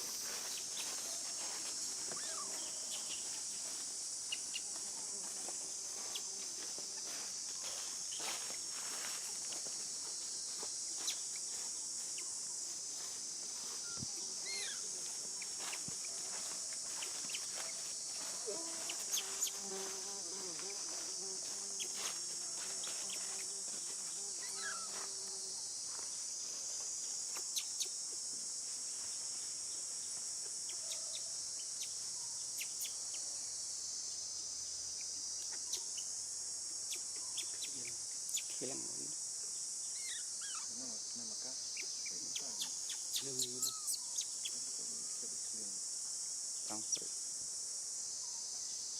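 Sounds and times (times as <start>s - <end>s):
faint chirps: 0.0s - 5.1s, 10.5s - 21.1s, 24.4s - 25.1s, 34.8s - 36.1s, 36.9s - 39.1s, 39.9s - 45.6s
insects droning: 0.0s - 48.9s.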